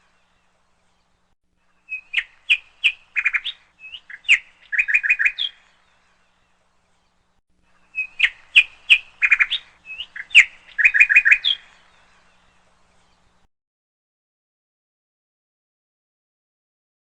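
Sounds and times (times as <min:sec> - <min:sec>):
songbird singing: 0:00.0 - 0:13.5.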